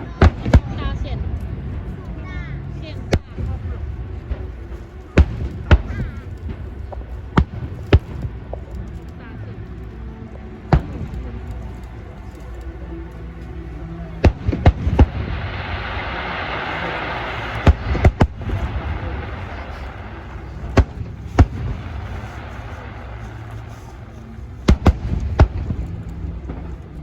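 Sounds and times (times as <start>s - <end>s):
fireworks crackling hiss: 0.0s - 9.1s, 10.4s - 27.0s
fireworks bangs: 14.2s - 23.6s, 24.7s - 25.9s.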